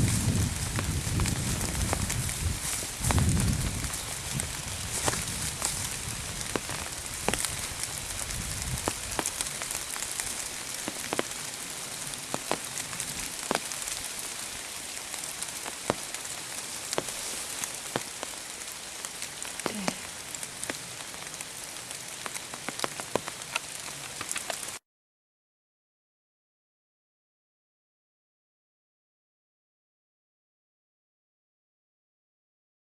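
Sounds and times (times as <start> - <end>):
pouring rain: 0.0 - 24.8
sharp ticks of raindrops: 0.0 - 24.8.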